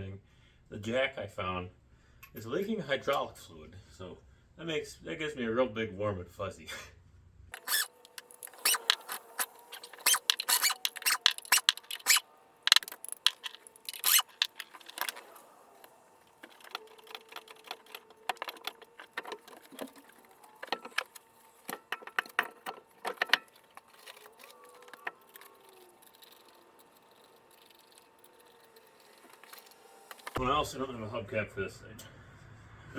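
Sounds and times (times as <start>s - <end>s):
metal tools clinking and rattling: 7.6s - 15.3s.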